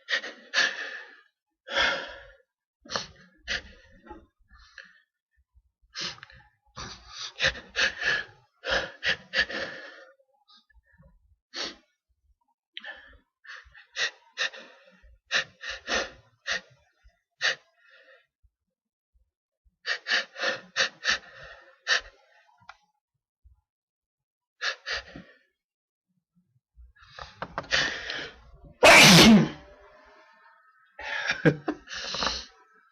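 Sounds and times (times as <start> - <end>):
person gasping before sneeze: 28.8 - 29.6.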